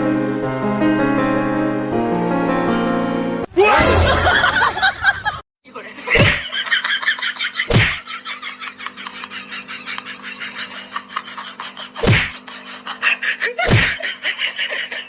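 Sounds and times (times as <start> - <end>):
piano music: 0.0 - 3.5
loud thumps: 12.0 - 12.4, 13.7 - 14.0.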